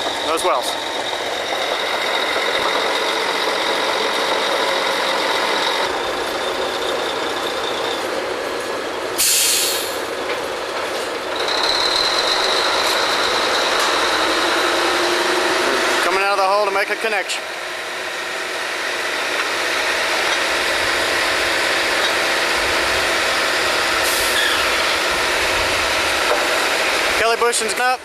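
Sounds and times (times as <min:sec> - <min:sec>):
drilling machinery whining: 0:00.0 - 0:28.0
air hiss: 0:09.2 - 0:10.1, 0:24.0 - 0:24.7.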